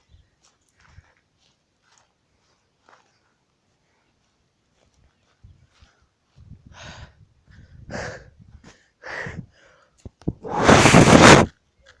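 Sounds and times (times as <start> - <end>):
person breathing: 6.7 - 10.6
loud rush of noise: 10.4 - 11.5.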